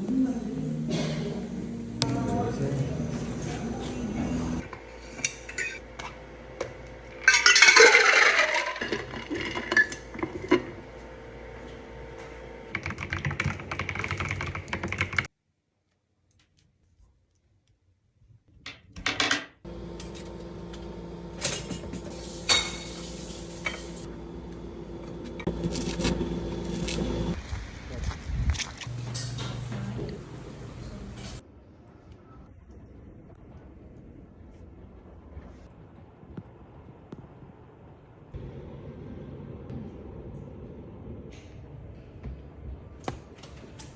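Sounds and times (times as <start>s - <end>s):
steady low hum: 19.7s - 31.4s, 33.4s - 43.0s
dishes and cutlery clinking: 21.4s - 24.0s, 28.9s - 31.4s.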